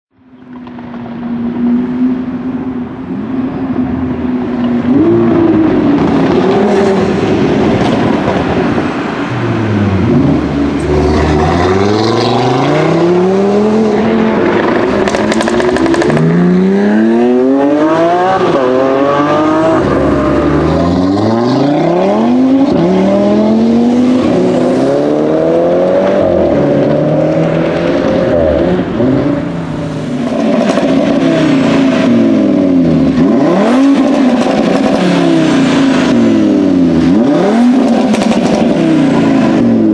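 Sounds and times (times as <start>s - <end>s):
exhaust crackles and pops: 0.4s - 1.6s, 14.3s - 16.3s
car engine revving: 3.6s - 39.9s.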